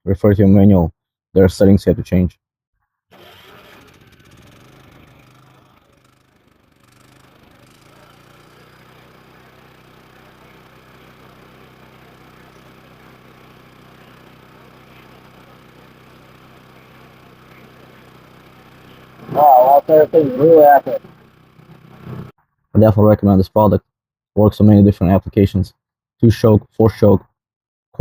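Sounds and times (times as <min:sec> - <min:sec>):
generator engine humming: 0:03.1 - 0:22.9.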